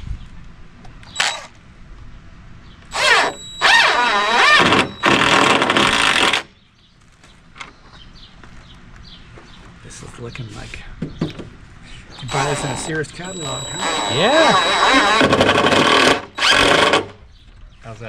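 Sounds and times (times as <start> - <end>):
cordless drill whining: 1.2 - 1.5, 2.9 - 6.4, 12.3 - 17.1.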